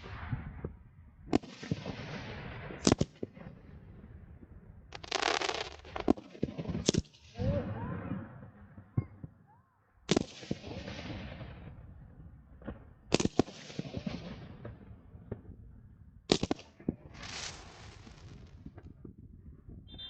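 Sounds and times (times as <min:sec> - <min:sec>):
fireworks bangs: 0:00.0 - 0:04.0, 0:04.9 - 0:08.9, 0:12.6 - 0:15.6, 0:16.3 - 0:19.1
fireworks crackling hiss: 0:04.9 - 0:06.2, 0:16.3 - 0:18.7
rising hiss: 0:17.2 - 0:18.3.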